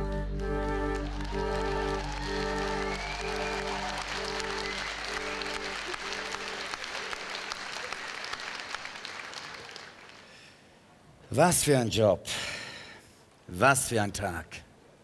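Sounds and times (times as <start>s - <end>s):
held ballad chords: 0.0s - 7.2s
audience applause: 0.0s - 10.4s.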